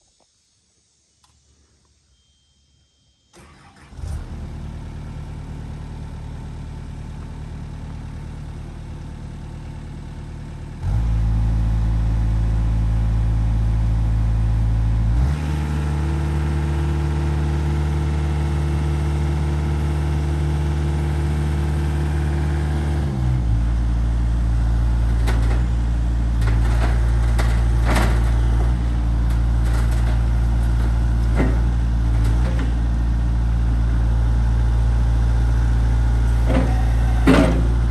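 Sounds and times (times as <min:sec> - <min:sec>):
diesel excavator engine running: 0:03.4 - 0:37.9
metallic clanks and knocks: 0:36.4 - 0:37.9.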